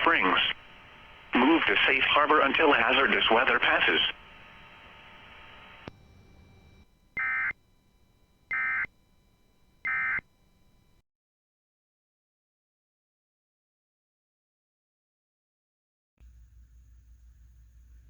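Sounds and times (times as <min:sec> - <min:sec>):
faint radio hiss: 0:00.0 - 0:07.5.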